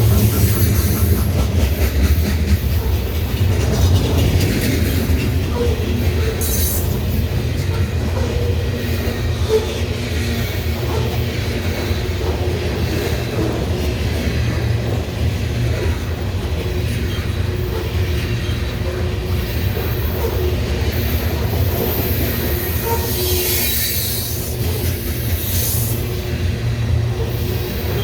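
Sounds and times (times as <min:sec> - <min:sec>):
train wheels rumbling on rail: 0:00.0 - 0:28.0.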